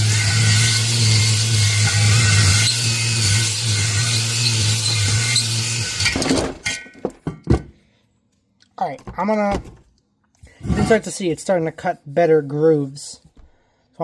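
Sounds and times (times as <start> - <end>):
power drill honing cylinder: 0.0 - 6.2.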